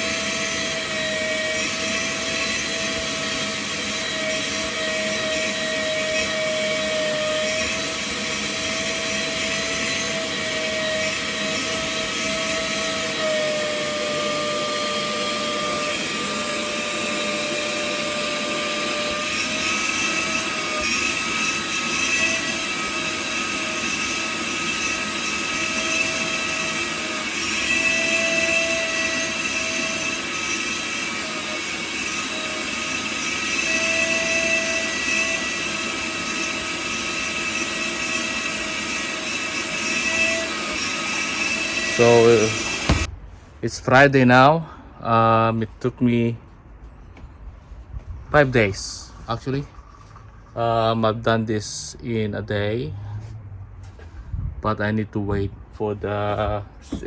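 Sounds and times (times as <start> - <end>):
vacuum cleaner whining motor: 0.0 - 43.1.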